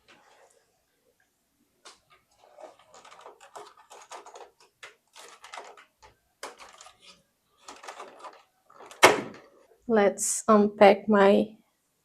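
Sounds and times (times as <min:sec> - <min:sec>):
clicks and rattles of small parts: 0:01.9 - 0:09.6.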